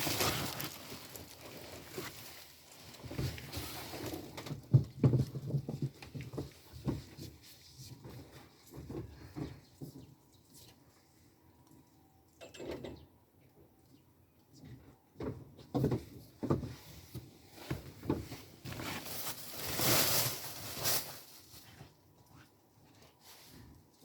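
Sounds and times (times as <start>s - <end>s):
laundry rustling and knocking: 15.2s - 21.1s.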